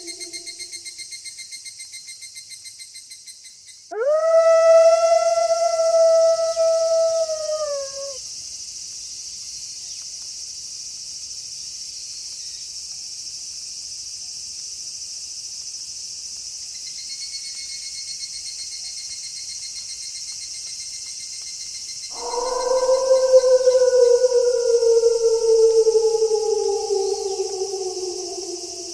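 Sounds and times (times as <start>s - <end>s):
wolf howling: 0.0s - 0.7s, 3.9s - 8.2s, 22.1s - 28.9s
crickets and insects chirping: 0.0s - 0.8s, 4.0s - 8.2s, 22.1s - 28.9s
fast pulsing insect trill: 22.2s - 28.9s.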